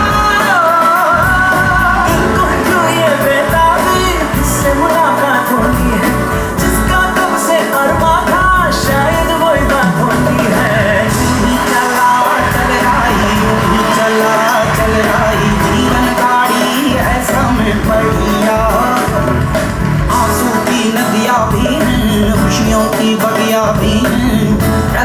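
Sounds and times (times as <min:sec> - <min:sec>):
pop song with singing: 0:00.0 - 0:25.0
strong bass line: 0:01.1 - 0:07.0, 0:10.1 - 0:16.2, 0:16.8 - 0:20.8.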